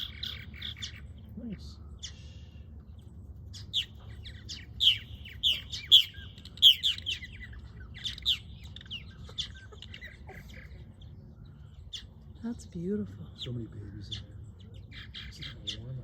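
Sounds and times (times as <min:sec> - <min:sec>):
birds chirping quick calls: 0:00.0 - 0:16.0.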